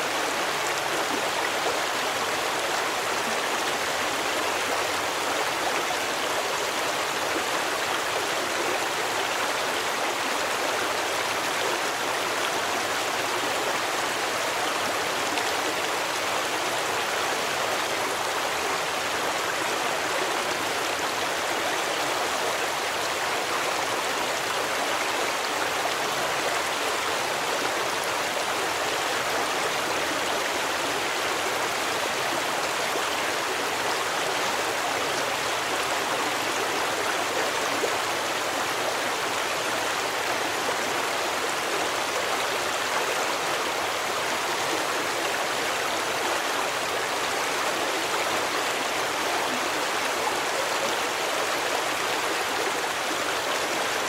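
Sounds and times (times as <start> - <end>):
stream flowing: 0.0 - 54.0.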